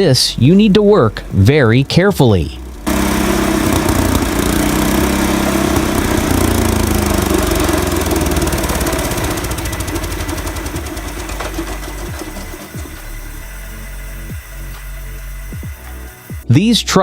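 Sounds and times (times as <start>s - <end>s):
combustion engine running: 0.0s - 16.6s.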